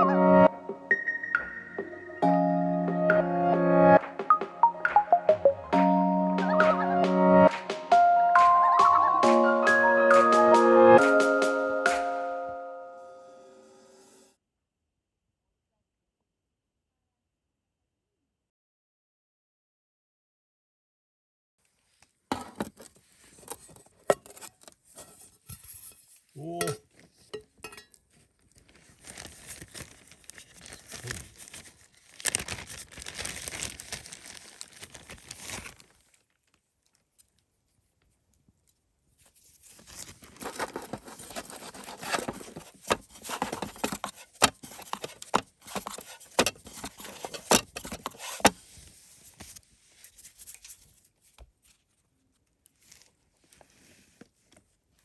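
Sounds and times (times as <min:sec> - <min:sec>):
cookware clicks and clinks: 0:26.6 - 0:28.0
packaging crinkling and tearing: 0:28.3 - 0:37.3, 0:39.4 - 0:48.8.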